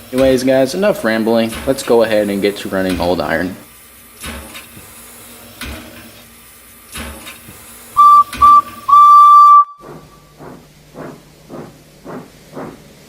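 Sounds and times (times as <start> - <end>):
steam engine chuffing: 0.0 - 5.4, 6.9 - 13.0
steam locomotive whistle: 8.0 - 10.3.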